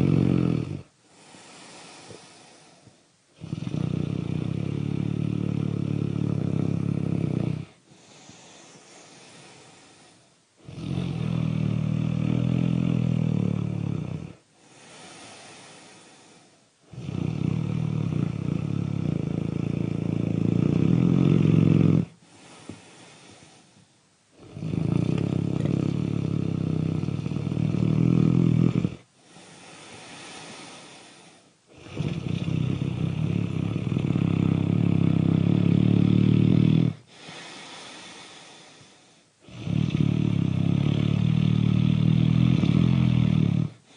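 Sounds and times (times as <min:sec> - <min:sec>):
loud snoring: 0:00.0 - 0:02.8, 0:03.4 - 0:23.6, 0:24.4 - 0:43.9
breathy breath: 0:01.0 - 0:03.0, 0:07.8 - 0:10.4, 0:14.4 - 0:16.7, 0:22.2 - 0:23.9, 0:29.2 - 0:32.1, 0:37.0 - 0:39.4.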